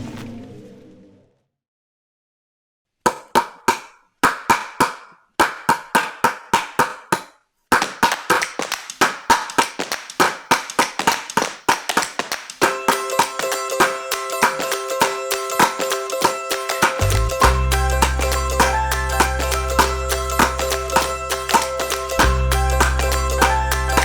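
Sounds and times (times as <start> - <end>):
sharp percussive hits with ringing: 12.4 - 24.0.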